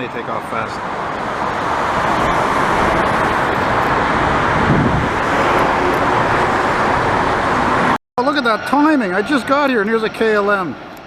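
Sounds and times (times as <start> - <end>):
jet engines at takeoff thrust: 0.2 - 11.0.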